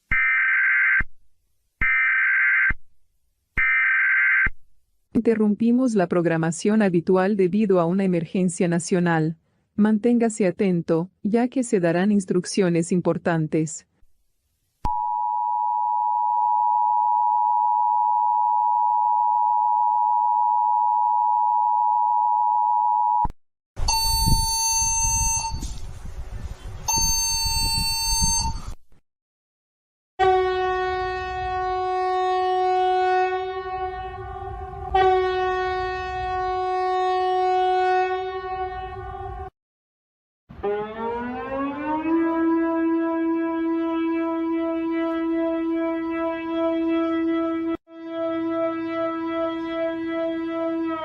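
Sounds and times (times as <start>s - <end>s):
low horn-like alert tone: 30.2s - 39.5s, 40.6s - 51.0s.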